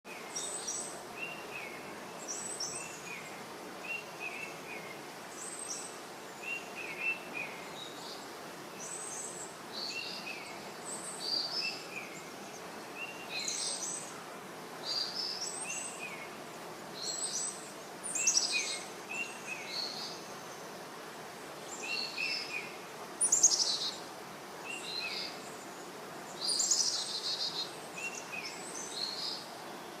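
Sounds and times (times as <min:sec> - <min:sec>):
birds calling and chirping: 0:14.8 - 0:20.8, 0:21.6 - 0:30.0.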